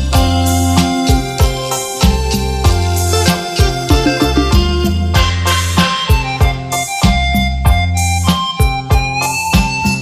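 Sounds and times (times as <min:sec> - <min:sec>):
electronic keyboard melody: 0:00.0 - 0:10.0
programmed drum beat: 0:01.4 - 0:05.4.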